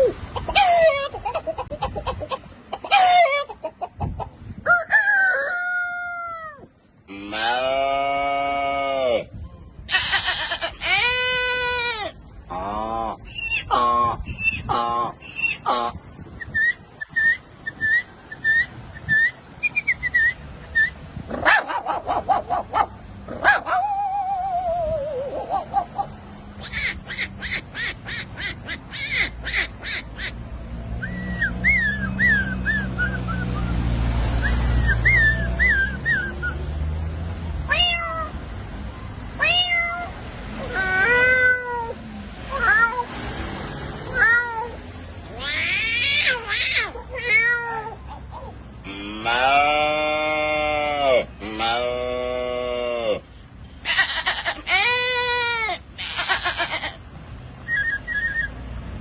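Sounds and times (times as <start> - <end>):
dog barking: 21.4 - 23.9
dog whimpering: 23.6 - 26.1
cat meowing: 37.7 - 38.3, 39.4 - 43.1, 44.1 - 48.0.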